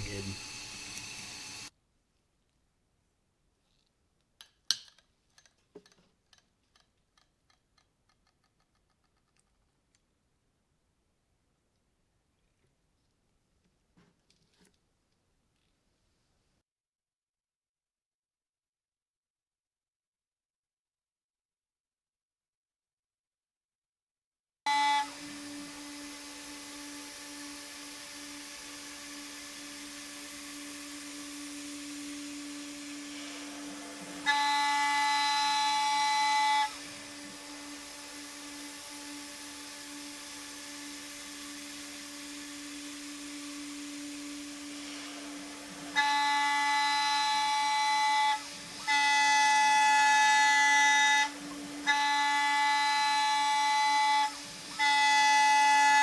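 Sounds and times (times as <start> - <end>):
router spindle humming: 0.0 - 1.7, 24.7 - 56.0.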